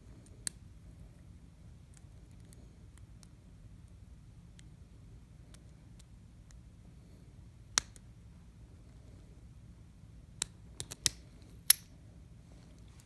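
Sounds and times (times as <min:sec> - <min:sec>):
metallic clicks of lock picking: 0:10.4 - 0:11.9.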